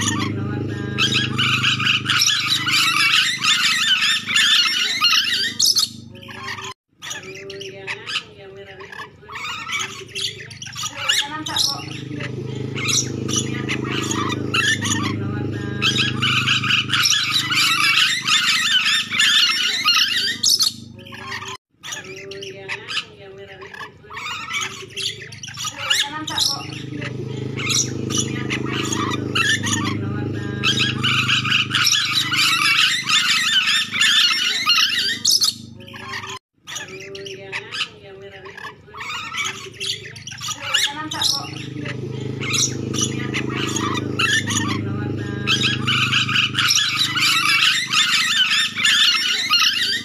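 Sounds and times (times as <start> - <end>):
steady low hum: 0.0 - 4.6, 11.6 - 21.5, 26.4 - 36.4, 41.0 - 50.0
parrots screeching chatter: 0.0 - 50.0.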